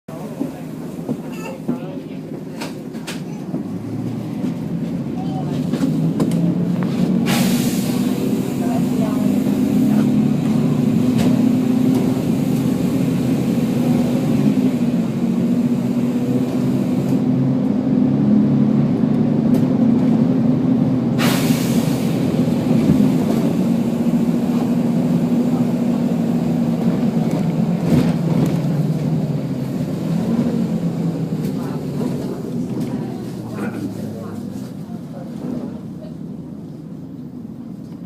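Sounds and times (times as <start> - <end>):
bus diesel engine droning: 0.1 - 38.0.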